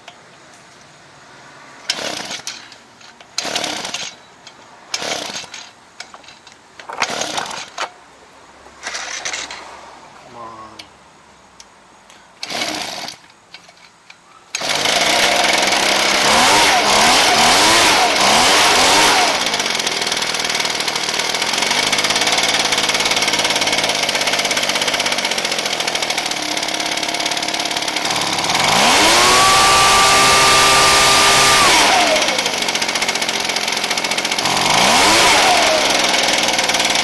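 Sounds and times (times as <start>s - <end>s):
two-stroke blower engine revving: 1.9s - 2.5s, 3.4s - 4.1s, 4.9s - 5.5s, 12.4s - 13.2s, 14.6s - 37.0s.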